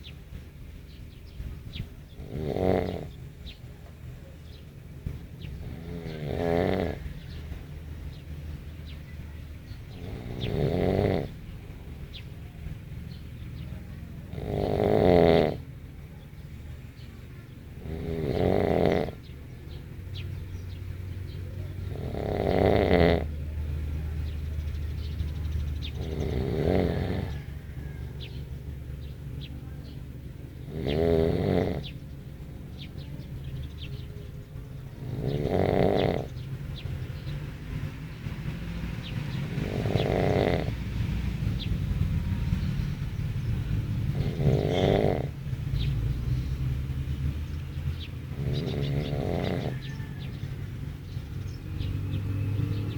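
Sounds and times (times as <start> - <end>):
person snoring: 2.2 - 3.1, 5.6 - 7.0, 10.0 - 11.4, 14.3 - 15.6, 17.8 - 19.2, 21.9 - 23.3, 26.0 - 27.4, 30.6 - 31.8, 39.6 - 40.7, 44.1 - 45.3, 48.3 - 49.8.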